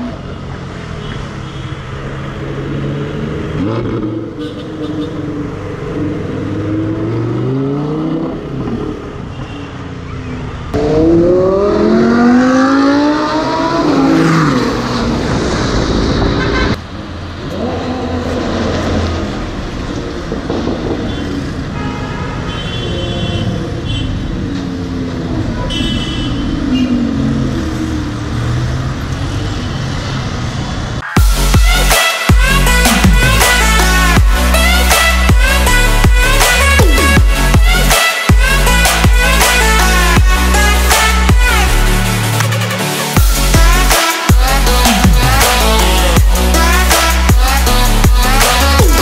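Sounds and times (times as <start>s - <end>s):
car engine revving and accelerating: 2.2s - 9.2s, 10.6s - 21.0s.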